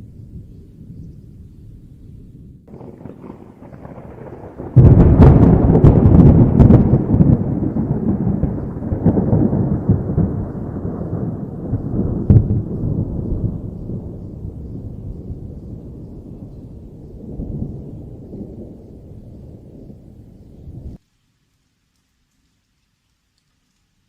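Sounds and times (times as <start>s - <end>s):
thunder rumbling: 0.0s - 21.0s
loud thunder crack: 2.7s - 21.0s.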